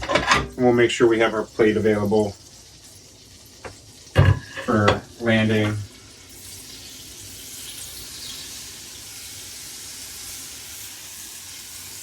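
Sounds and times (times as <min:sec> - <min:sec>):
hot pan sizzling: 0:00.0 - 0:12.0.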